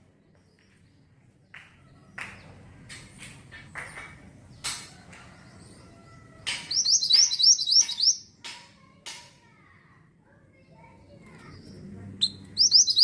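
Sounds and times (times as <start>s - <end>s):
bird chirping: 3.8s - 8.4s, 11.4s - 13.0s
bird singing fast high notes: 6.7s - 8.3s.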